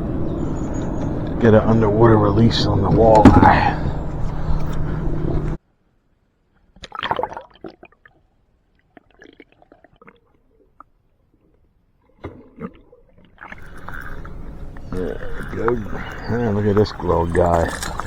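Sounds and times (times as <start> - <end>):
splashing: 12.2 - 18.0
water gurgling underwater: 12.3 - 18.0.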